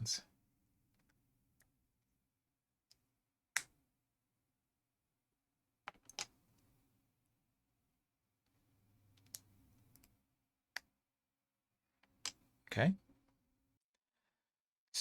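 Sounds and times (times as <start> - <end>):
plastic blocks clicking together: 5.9 - 6.3.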